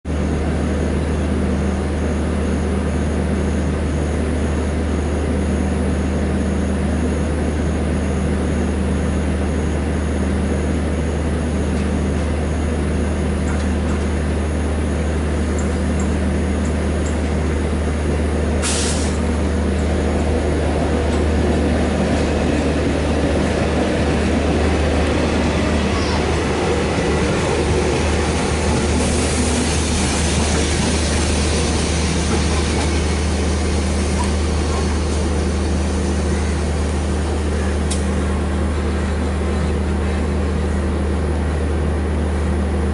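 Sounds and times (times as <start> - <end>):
diesel locomotive idling: 0.1 - 42.9
burst of released air: 18.6 - 19.2.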